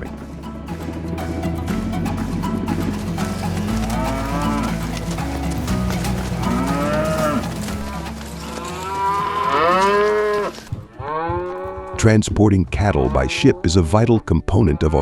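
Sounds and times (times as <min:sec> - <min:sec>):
cattle mooing: 0:03.2 - 0:11.9.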